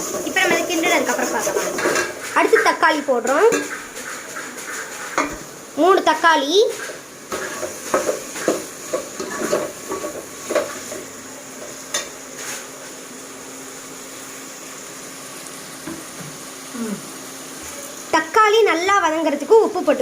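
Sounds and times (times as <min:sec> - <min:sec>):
oil sizzling: 0:00.0 - 0:20.0
spoon scraping in a pot: 0:06.8 - 0:11.0.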